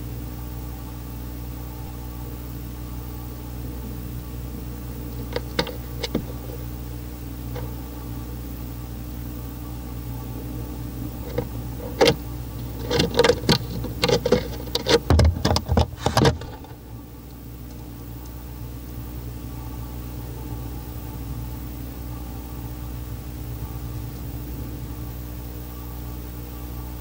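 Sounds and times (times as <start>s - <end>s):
electrical hum: 0.0s - 27.0s
scratches and knocks: 5.2s - 6.6s, 11.2s - 16.8s
scrapes and thumps: 5.2s - 6.7s, 11.2s - 16.8s.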